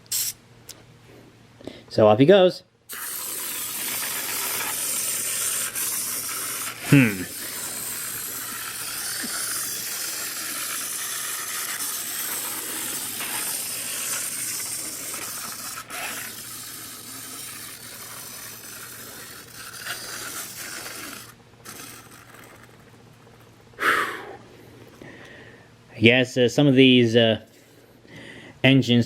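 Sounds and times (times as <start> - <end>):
clockwork toy motor whirring: 2.9 - 23.5.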